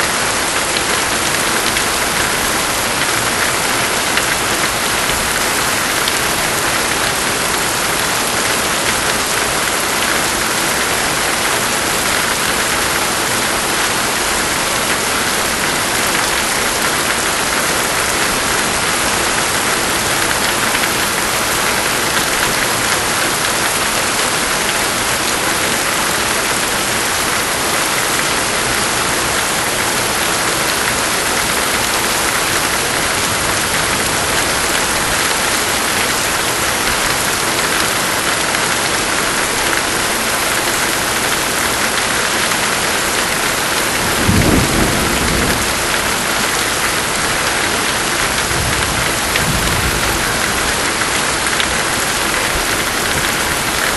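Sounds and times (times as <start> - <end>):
pouring rain: 0.0 - 53.9
thunder rumble: 44.0 - 46.3.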